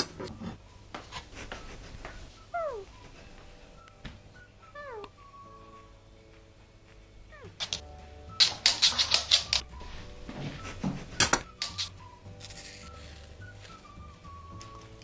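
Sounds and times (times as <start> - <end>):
soft background music: 0.0 - 15.0
sharp clicks or taps: 7.6 - 9.7.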